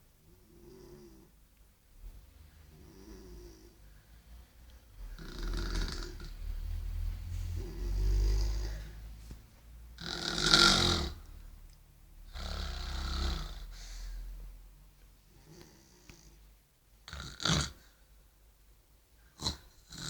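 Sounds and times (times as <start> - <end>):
woman snoring: 5.0 - 6.4, 7.6 - 9.0, 10.0 - 11.2, 12.3 - 13.8.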